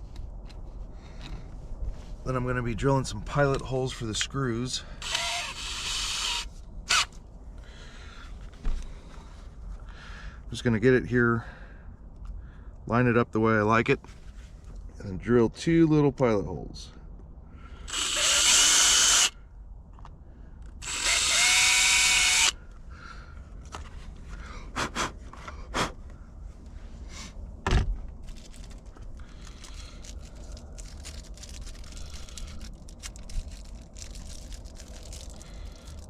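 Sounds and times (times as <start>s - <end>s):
electric drill whining: 5.0s - 7.1s, 17.9s - 19.4s, 20.8s - 22.6s.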